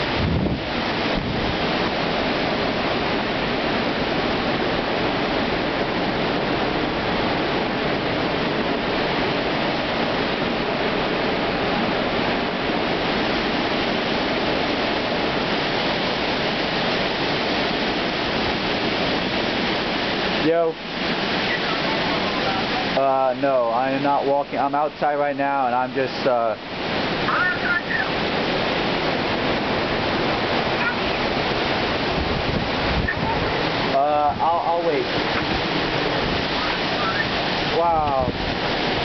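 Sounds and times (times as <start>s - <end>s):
storm wind rushing: 0.0s - 23.0s, 26.0s - 39.0s
wind gust buffeting microphone: 0.0s - 39.0s.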